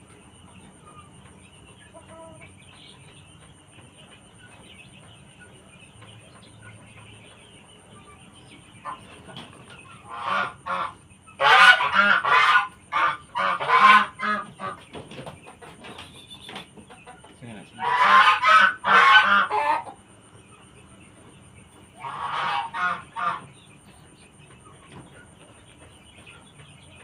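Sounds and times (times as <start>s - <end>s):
chicken squawking: 8.7s - 20.0s, 21.9s - 23.6s.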